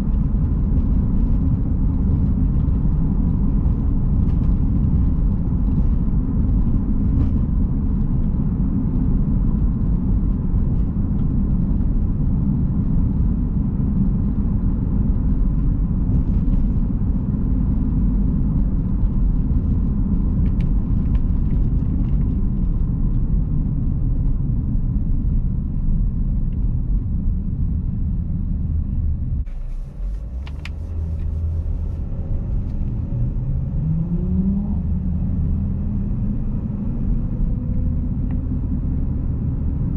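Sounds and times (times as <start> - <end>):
car engine rumble from inside cabin: 0.0 - 39.9.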